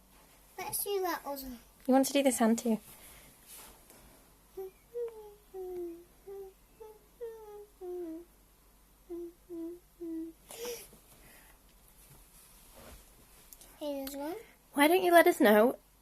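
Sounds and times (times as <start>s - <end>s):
person humming a tune: 4.6s - 8.3s, 9.0s - 10.8s.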